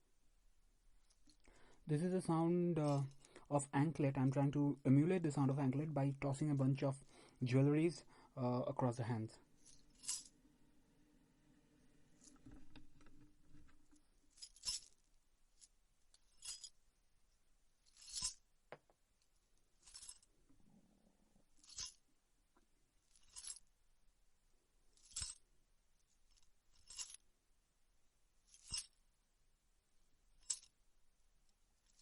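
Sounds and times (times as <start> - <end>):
metal jewellery jingling: 9.6 - 10.3, 13.9 - 15.0, 15.6 - 16.8, 17.8 - 18.4, 19.8 - 20.3, 21.6 - 22.0, 23.1 - 23.6, 25.0 - 25.4, 26.3 - 27.2, 28.5 - 29.0, 30.4 - 30.7.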